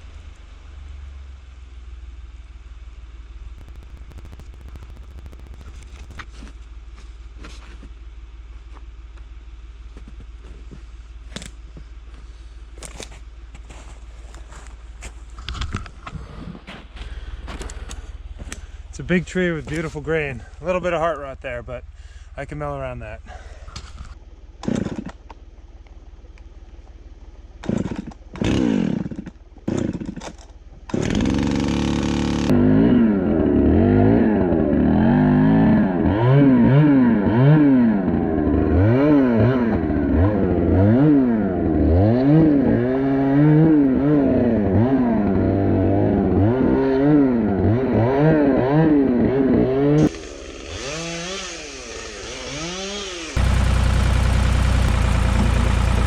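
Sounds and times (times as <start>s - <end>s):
chainsaw revving: 3.6s - 6.3s, 24.6s - 25.1s, 27.6s - 30.3s, 30.9s - 56.0s.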